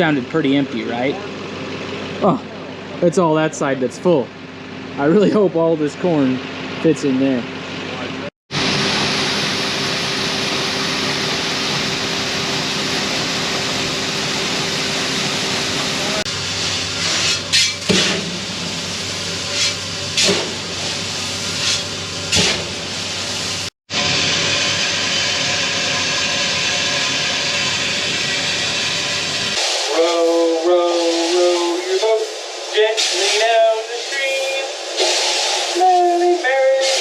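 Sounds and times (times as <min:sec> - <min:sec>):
engine humming: 0:00.0 - 0:23.6
grain pouring with a hiss: 0:22.9 - 0:37.0.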